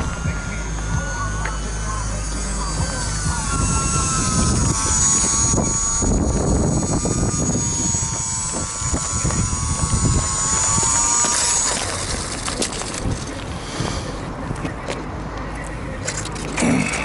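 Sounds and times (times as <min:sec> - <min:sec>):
model airplane motor whining: 0:00.0 - 0:14.5
wind buffeting microphone: 0:02.8 - 0:15.0.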